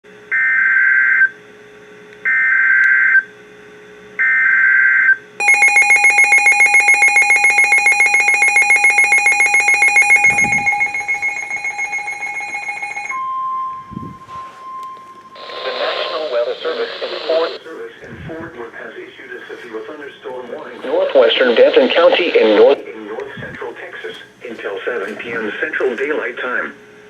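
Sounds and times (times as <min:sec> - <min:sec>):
rapid pulsing electronic beep: 0:05.4 - 0:13.2
steady alarm tone: 0:05.4 - 0:15.6.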